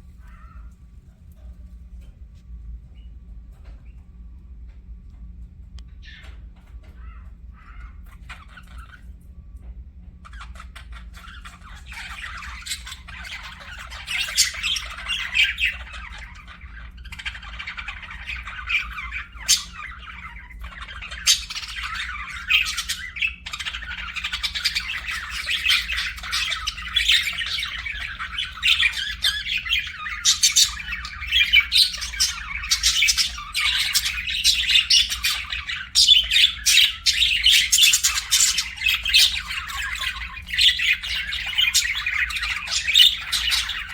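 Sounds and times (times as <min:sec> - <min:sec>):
budgerigars chattering: 0:10.3 - 0:43.9.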